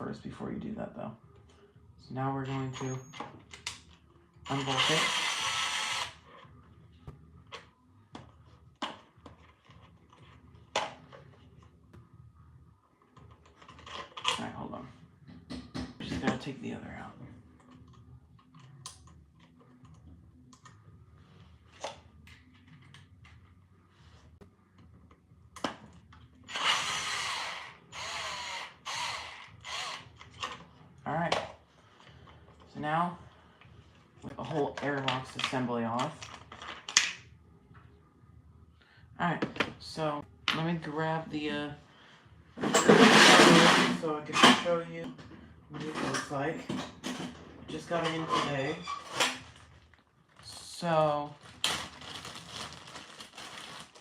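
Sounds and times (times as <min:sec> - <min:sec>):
power drill motor bursts: 0:04.5 - 0:06.2, 0:26.5 - 0:30.1.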